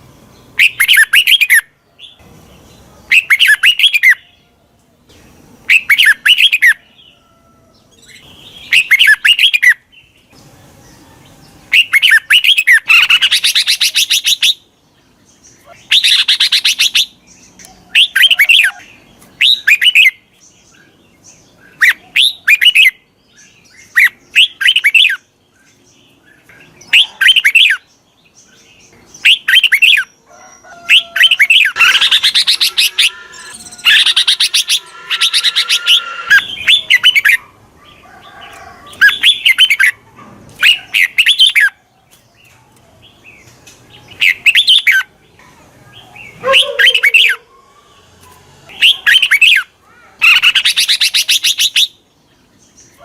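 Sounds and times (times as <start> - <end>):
bird harsh chattering calls: 0.6 - 1.6, 3.1 - 4.2, 5.7 - 6.8, 8.0 - 9.8, 11.7 - 14.6, 15.6 - 20.2, 30.8 - 38.0, 39.0 - 41.8, 46.2 - 52.0
bird whistled phrases: 0.6 - 1.6, 3.1 - 4.2, 8.6 - 9.8, 11.7 - 14.6, 17.9 - 20.1, 30.9 - 37.4, 44.2 - 45.1, 46.3 - 47.4, 48.7 - 51.9.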